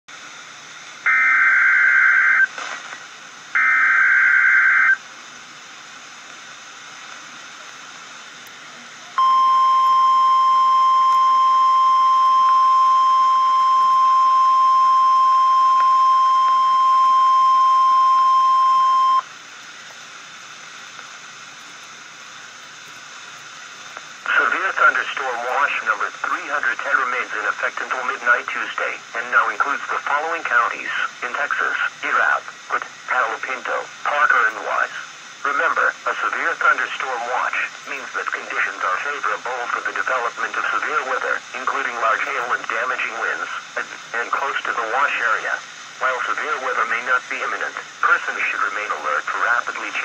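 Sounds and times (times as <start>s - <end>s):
radio static hiss: 0.1s - 50.0s
steady high alarm tone: 1.1s - 2.5s, 3.6s - 5.0s, 9.2s - 19.3s.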